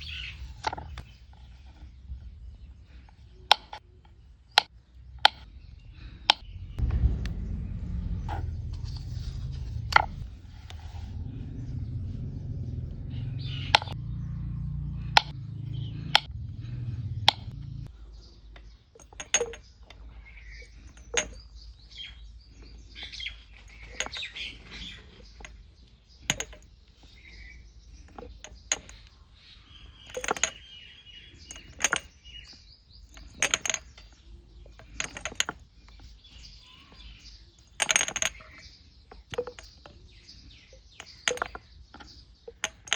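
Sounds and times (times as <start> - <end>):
birds chirping: 0.0 - 42.9
low rumble: 5.7 - 18.0
sharp clicks and taps: 16.1 - 16.3.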